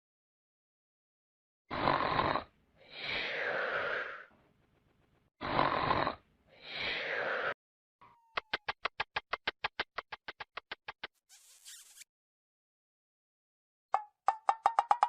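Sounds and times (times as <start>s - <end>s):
comic snoring: 1.7s - 4.4s, 5.4s - 7.6s.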